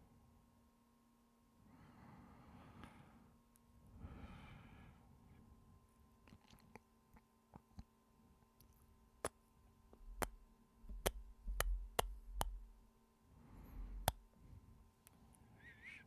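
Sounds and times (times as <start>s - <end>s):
soft breath: 3.9s - 5.5s
clicky lip smacks: 10.0s - 12.8s.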